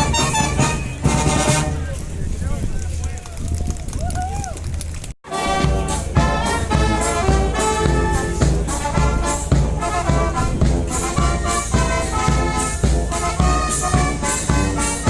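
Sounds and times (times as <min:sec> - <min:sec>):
big-band swing music with brass: 0:00.0 - 0:02.0, 0:05.2 - 0:15.0.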